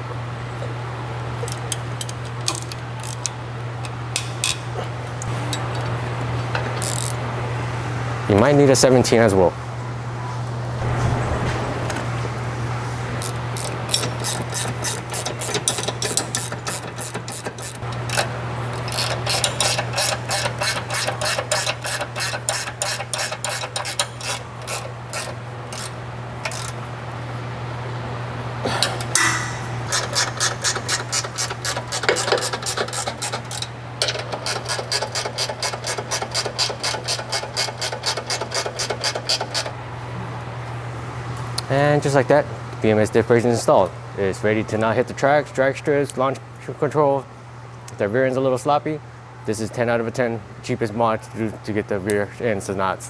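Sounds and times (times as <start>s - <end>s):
steady low hum: 0.0s - 34.1s
ratchet wrench clicking: 1.5s - 4.6s, 6.5s - 7.2s, 13.2s - 26.8s, 29.2s - 39.7s.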